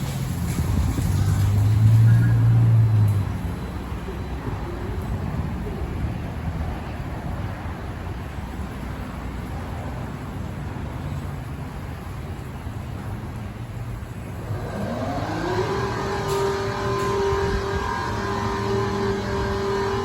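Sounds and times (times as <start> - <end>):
car wash rumble: 0.0 - 20.0
high motor whine: 14.2 - 20.0.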